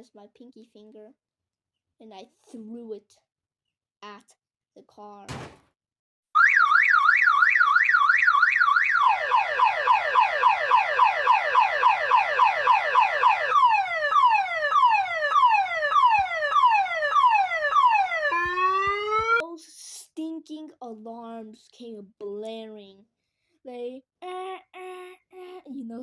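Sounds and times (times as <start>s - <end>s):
car alarm siren: 6.4s - 19.4s.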